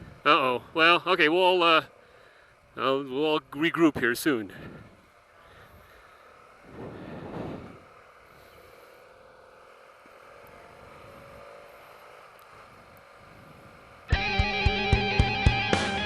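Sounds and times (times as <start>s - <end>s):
faint motorcycle engine: 0.0s - 16.0s
wind noise: 6.7s - 7.8s
rock music with electric guitar: 14.1s - 16.0s.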